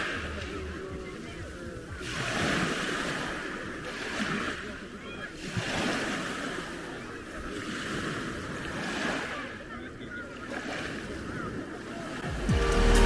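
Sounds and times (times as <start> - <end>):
waves on a pebble beach: 0.0 - 13.0
music: 12.2 - 13.0.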